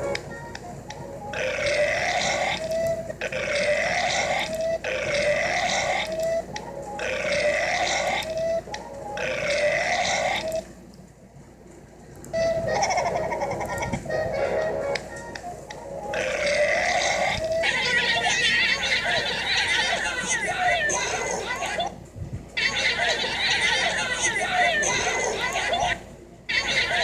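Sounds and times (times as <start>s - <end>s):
long rising burps: 1.3s - 2.6s, 3.3s - 6.0s, 7.0s - 8.2s, 9.2s - 10.4s, 16.1s - 17.4s.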